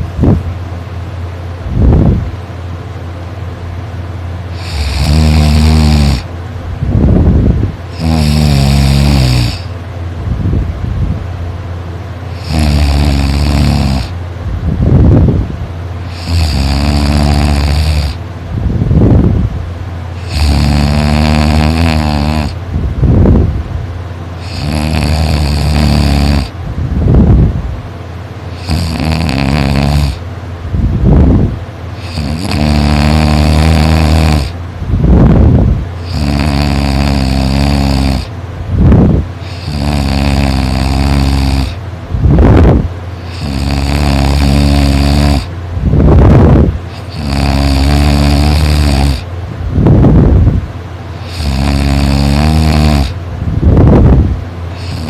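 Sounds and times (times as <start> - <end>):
person snoring loudly: 4.5 - 6.3, 7.9 - 9.7, 12.3 - 14.2, 16.0 - 18.2, 20.2 - 23.4, 24.4 - 26.6, 28.5 - 30.2, 32.0 - 38.3, 38.9 - 50.5, 51.2 - 55.0.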